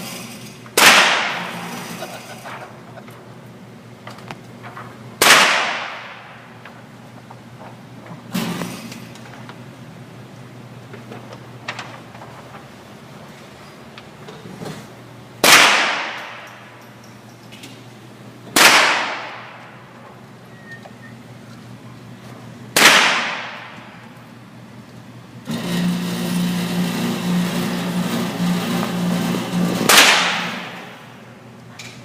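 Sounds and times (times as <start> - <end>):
steady hiss with pulsing hum: 0.0 - 32.0
echoing gunshots: 0.8 - 1.8, 5.2 - 6.6, 15.4 - 16.5, 18.5 - 19.8, 22.7 - 24.0, 29.8 - 31.2.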